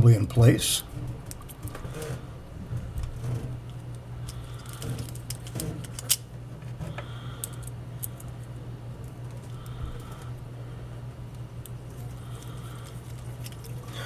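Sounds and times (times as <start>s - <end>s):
low steady hum: 0.0s - 14.0s
small metal parts clicking: 4.2s - 6.2s, 11.6s - 13.8s.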